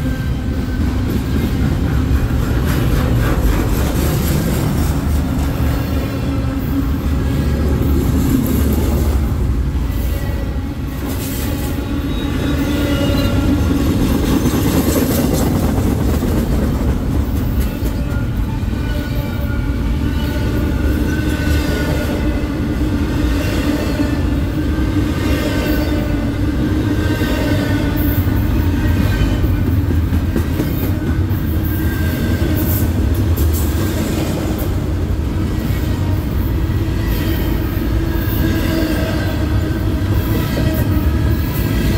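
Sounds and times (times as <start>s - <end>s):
freight train rumbling on rails: 0.0s - 41.9s
high-pitched wheel squeals: 12.0s - 13.6s.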